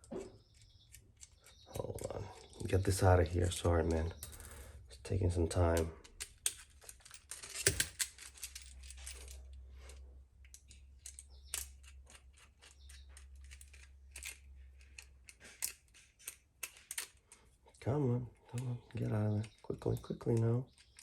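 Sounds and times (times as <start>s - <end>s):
objects being handled: 5.5s - 21.0s.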